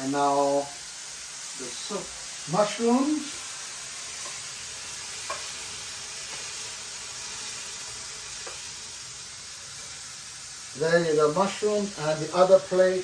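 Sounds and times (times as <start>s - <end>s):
sausages sizzling in a frying pan: 0.0s - 13.0s
utensil tapping a pan: 5.2s - 5.6s.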